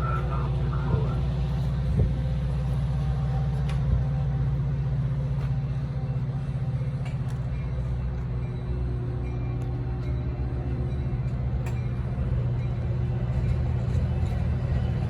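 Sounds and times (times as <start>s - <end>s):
diesel locomotive engine throbbing: 0.0s - 15.0s.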